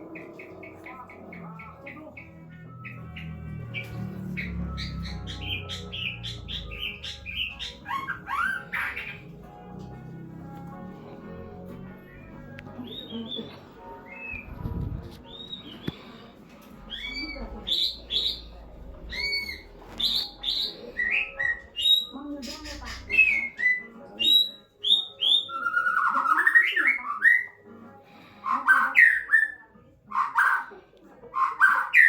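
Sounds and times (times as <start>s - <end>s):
harsh sweeping bird notes: 0.0s - 9.8s, 12.1s - 23.9s
bird whistling: 2.8s - 9.2s, 15.3s - 16.0s, 16.9s - 18.5s, 19.1s - 27.6s, 28.5s - 29.6s, 31.4s - 32.0s.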